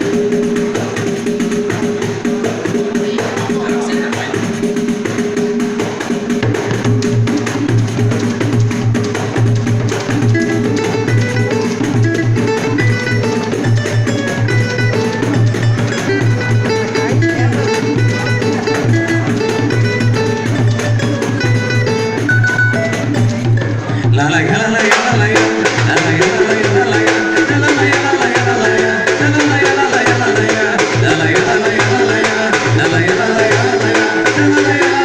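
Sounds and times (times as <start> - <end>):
plucked string instrument: 0.0 - 35.0
samba percussion group: 0.0 - 35.0
melody of short stepped notes: 18.9 - 23.6.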